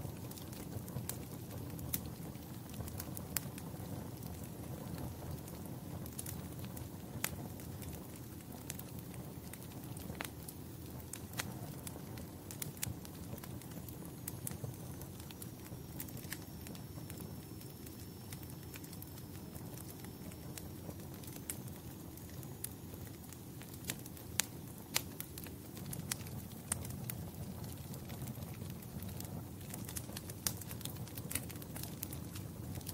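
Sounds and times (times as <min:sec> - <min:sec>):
fire crackles and pops: 0:00.0 - 0:32.9
low rumble of flames: 0:00.0 - 0:32.9.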